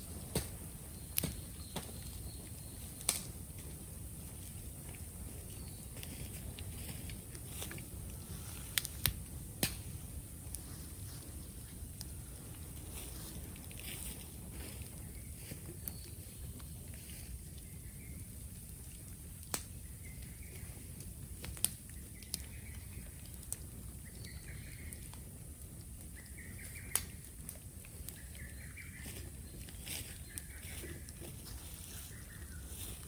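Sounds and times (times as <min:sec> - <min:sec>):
bamboo bonfire crackling: 0:00.0 - 0:33.0
sharp pops: 0:08.7 - 0:09.9.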